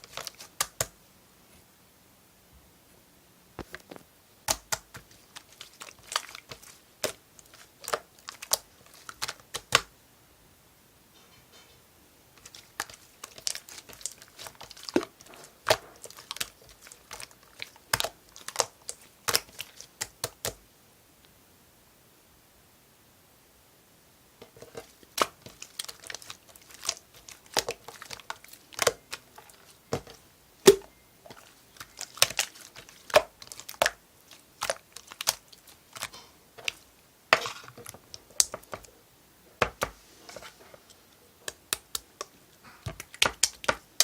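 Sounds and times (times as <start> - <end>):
slime clicking and popping: 4.5 - 9.9, 25.1 - 36.8, 41.5 - 44.0.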